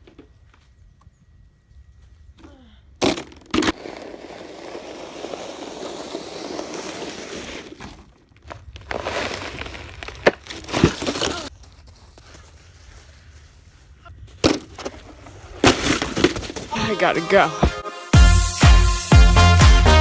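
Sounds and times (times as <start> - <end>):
plastic sled scraping over snow: 3.4 - 17.8.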